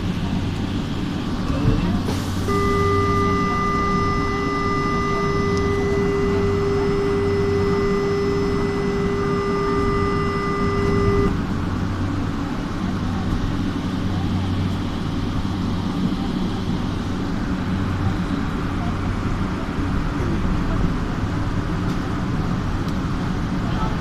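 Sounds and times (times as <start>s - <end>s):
train car hum: 0.0s - 24.0s
electronic warning tone: 2.4s - 11.4s.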